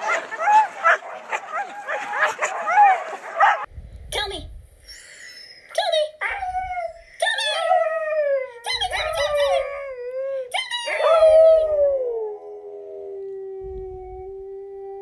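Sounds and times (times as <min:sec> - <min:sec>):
dog howling: 0:00.0 - 0:03.7.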